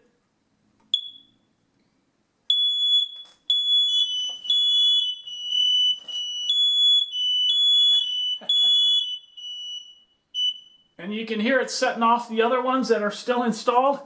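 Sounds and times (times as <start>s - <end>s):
smoke alarm beeping: 0.9s - 1.6s, 2.5s - 11.0s
lower-pitched second alarm: 2.5s - 11.0s.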